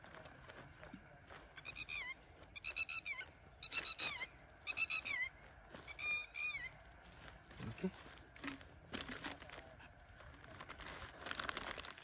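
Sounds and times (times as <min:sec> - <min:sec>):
bird calling: 0:01.5 - 0:06.8.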